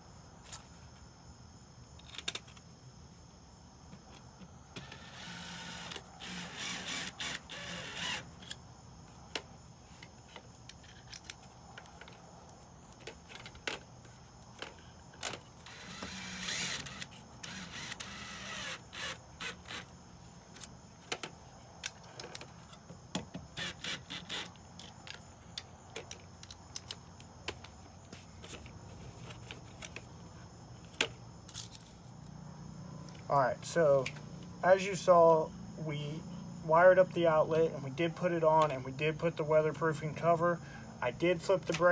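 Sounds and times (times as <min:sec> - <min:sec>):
small electric motor running: 0:04.8 - 0:08.5, 0:15.6 - 0:20.0, 0:23.6 - 0:24.5.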